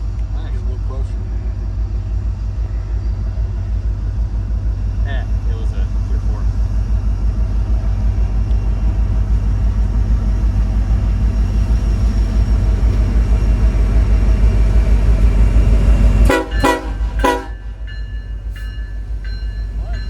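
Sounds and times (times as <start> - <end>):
diesel locomotives rumbling: 0.0 - 20.0
locomotive air horn toots: 16.2 - 17.8.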